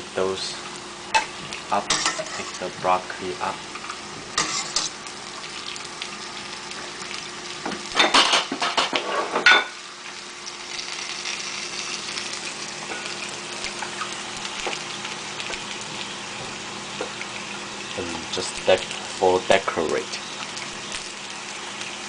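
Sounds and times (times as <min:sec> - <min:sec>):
hot oil sizzling: 0:00.0 - 0:22.0
metal utensils clattering on wok: 0:01.9 - 0:02.6.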